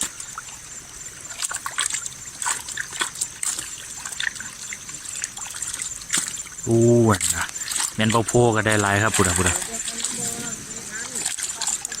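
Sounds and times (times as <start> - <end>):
water trickling and splashing: 0.0 - 12.0.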